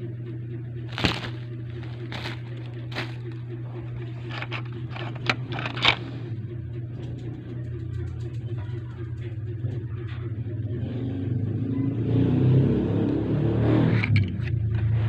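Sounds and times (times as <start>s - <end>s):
steady low hum: 0.0s - 12.0s
packaging crinkling: 0.9s - 3.4s
small parts clicking: 4.2s - 6.1s.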